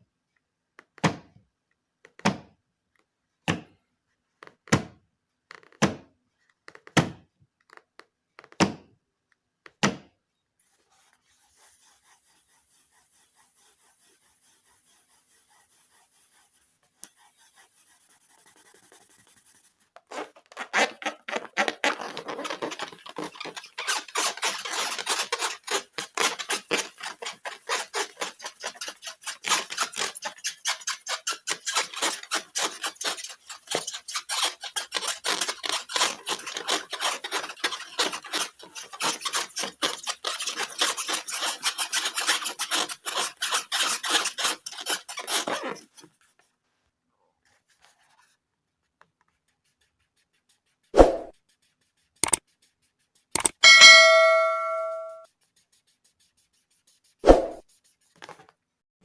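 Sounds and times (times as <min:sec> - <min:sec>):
slime scratchy rasping and crackling: 0:17.4 - 0:45.9.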